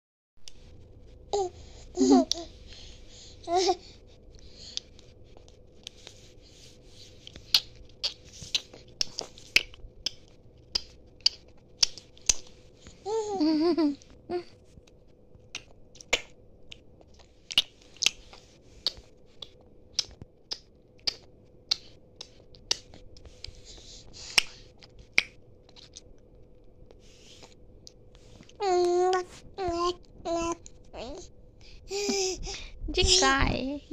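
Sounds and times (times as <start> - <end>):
faint steady hum: 0.4 - 33.9
baby mouth clicks and smacks: 7.2 - 12.5, 15.5 - 23.6, 24.3 - 26.1.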